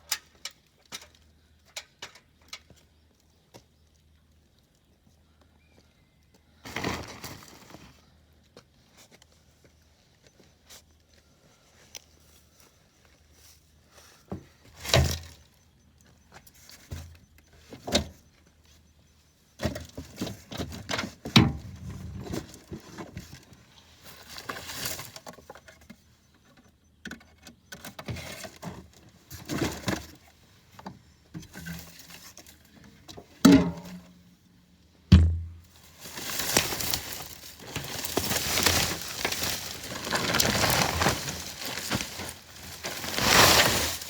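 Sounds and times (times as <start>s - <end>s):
branches rustling: 35.2s - 44.0s.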